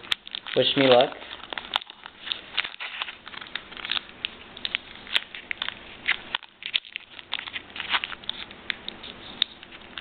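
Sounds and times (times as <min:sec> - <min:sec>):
foil wrapper crinkling: 0:00.0 - 0:10.0.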